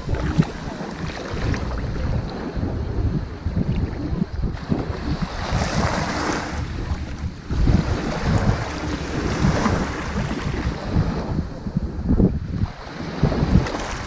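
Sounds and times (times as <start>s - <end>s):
waves washing onto beach: 0.0s - 14.0s
wind buffeting microphone: 0.0s - 14.0s.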